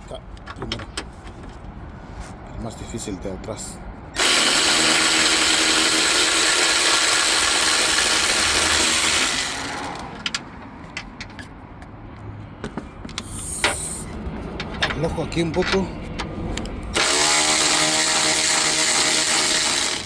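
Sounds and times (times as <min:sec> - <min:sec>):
power ratchet running: 0:04.2 - 0:10.1, 0:17.0 - 0:20.0.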